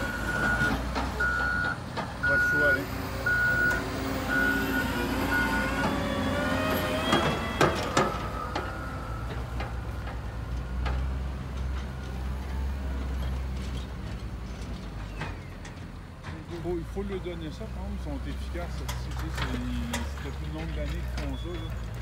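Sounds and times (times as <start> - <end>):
reversing alarm beeping: 0.0 - 9.3, 21.2 - 21.8
heavy engine rumble: 0.0 - 22.0.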